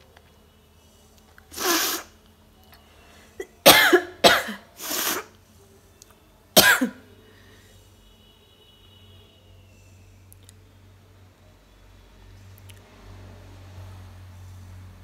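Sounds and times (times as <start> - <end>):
person sneezing: 1.5 - 2.1, 3.4 - 5.3, 6.6 - 7.0.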